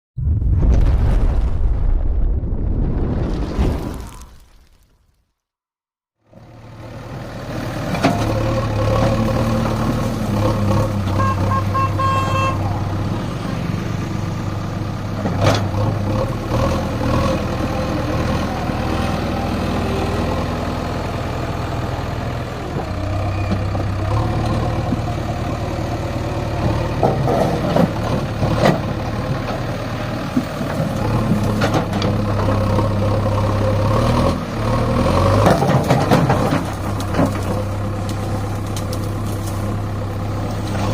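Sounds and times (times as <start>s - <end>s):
diesel engine running under load: 6.3s - 40.9s
clunks: 35.3s - 39.7s.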